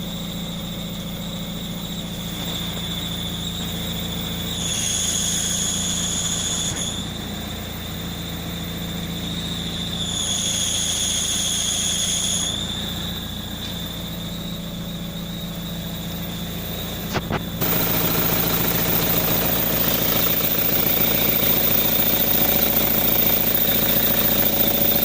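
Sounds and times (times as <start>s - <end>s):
high steady whistle: 0.0s - 25.0s
diesel engine idling: 15.8s - 25.0s.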